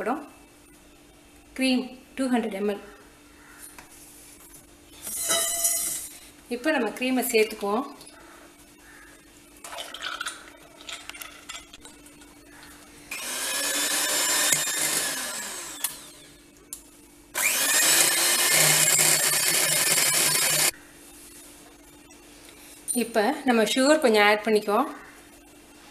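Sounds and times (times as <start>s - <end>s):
electric mixer whipping cream: 13.1s - 16.2s, 17.4s - 20.7s.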